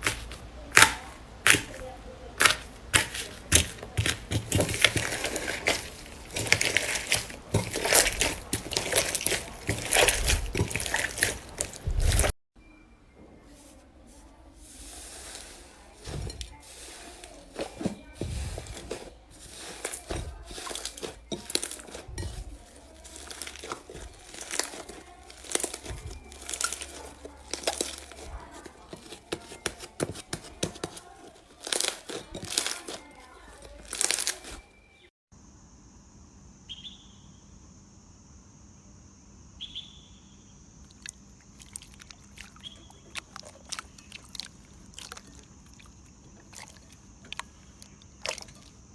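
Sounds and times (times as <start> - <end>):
slime crackling and popping: 2.4 - 12.3, 16.3 - 30.2, 30.8 - 34.6.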